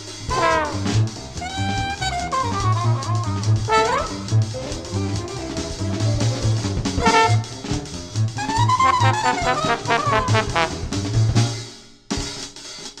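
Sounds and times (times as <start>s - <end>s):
jazzy cartoon music: 0.0s - 11.7s
sliding brass phrase: 0.3s - 7.8s, 8.4s - 11.1s.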